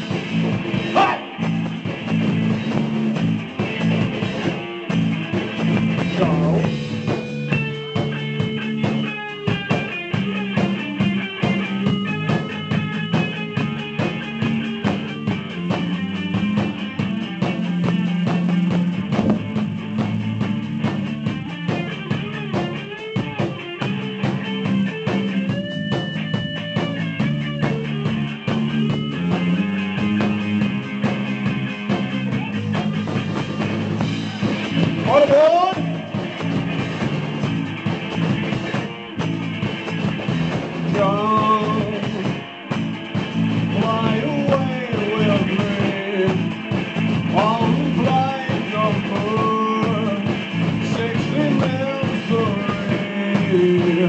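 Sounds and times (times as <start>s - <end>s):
bass guitar: 0.0s - 54.0s
drum kit steady beat: 0.0s - 54.0s
electric guitar: 0.0s - 54.0s.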